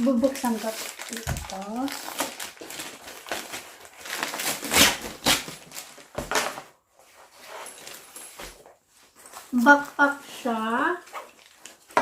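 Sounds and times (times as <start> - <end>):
packaging rustling and crinkling: 0.0 - 12.0.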